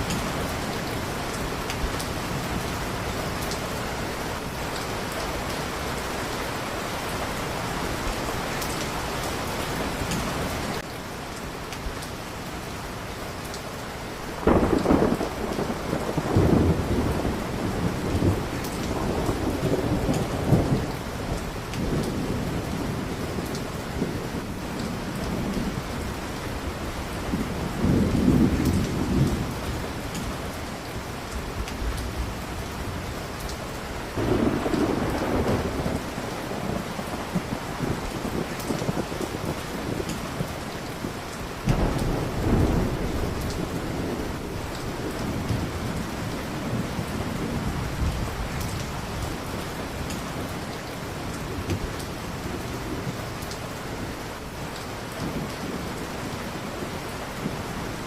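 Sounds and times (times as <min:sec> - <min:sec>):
heavy rain: 0:00.0 - 0:58.0
thunder rumbling: 0:14.3 - 0:33.3, 0:34.0 - 0:53.4.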